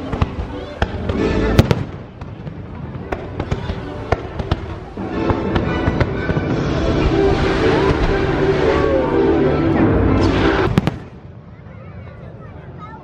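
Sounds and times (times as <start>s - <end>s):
fireworks bangs and crackles: 0.0s - 11.8s
loud music soundtrack: 5.0s - 10.8s.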